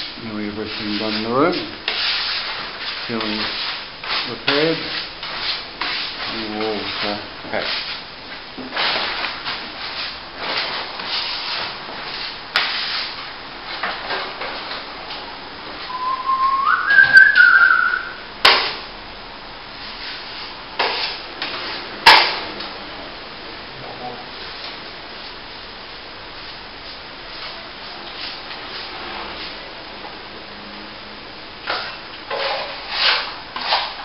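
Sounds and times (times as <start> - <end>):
rising whistle-like tone: 15.9 - 18.3
trowel scraping wet plaster: 32.4 - 34.0.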